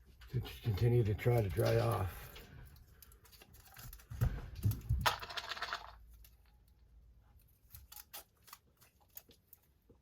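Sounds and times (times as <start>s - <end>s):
jar rattle: 5.0s - 6.1s.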